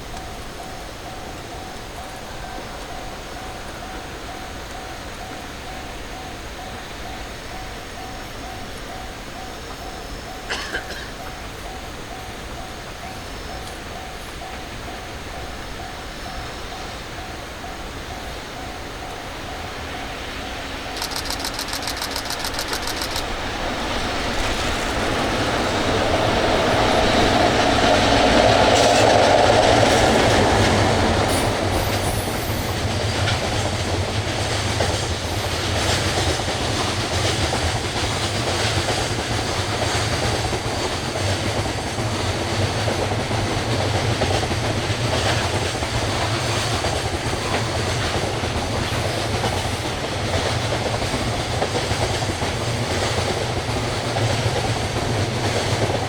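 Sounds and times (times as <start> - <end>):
train passing on rails: 0.0 - 56.0
wheels clacking over rail joints: 20.9 - 56.0.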